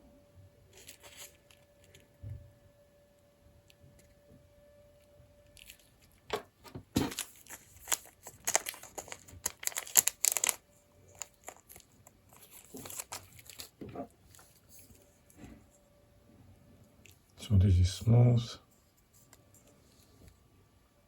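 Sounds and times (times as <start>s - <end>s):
packaging crinkling and tearing: 0.8s - 2.0s, 5.6s - 14.6s.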